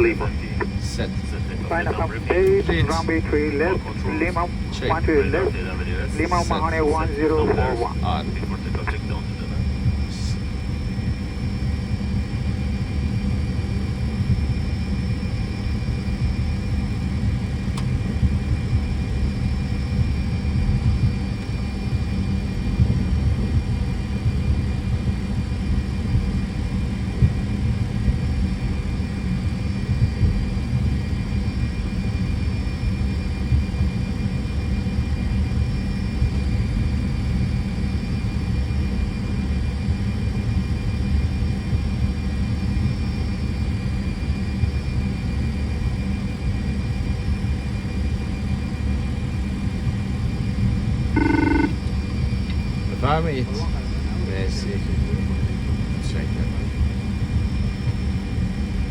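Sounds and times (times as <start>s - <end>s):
jet engines idling: 0.0s - 11.0s.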